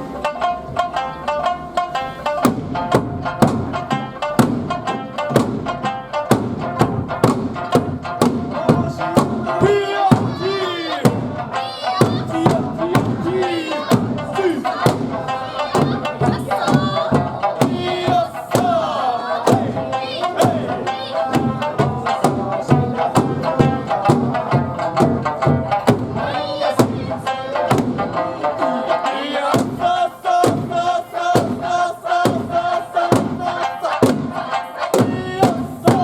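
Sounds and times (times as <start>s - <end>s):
folk music: 0.0s - 36.0s
drums struck in steady time: 2.2s - 36.0s
dancers shouting in chorus: 9.6s - 11.0s.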